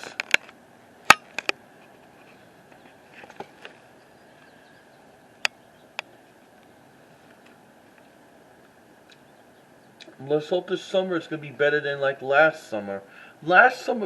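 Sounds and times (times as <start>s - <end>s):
faint steady hum: 0.0s - 14.0s.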